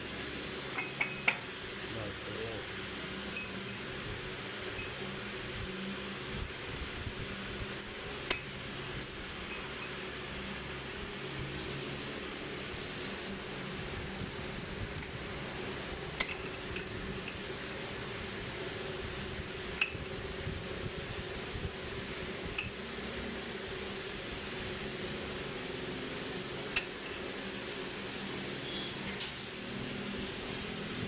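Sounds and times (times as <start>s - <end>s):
workshop hum: 0.0s - 31.0s
metal tools clinking: 0.6s - 1.8s.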